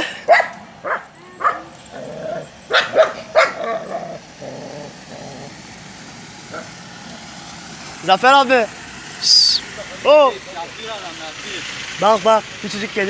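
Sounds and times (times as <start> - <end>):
dog barking: 0.3 - 1.7, 2.3 - 4.2, 6.5 - 6.8.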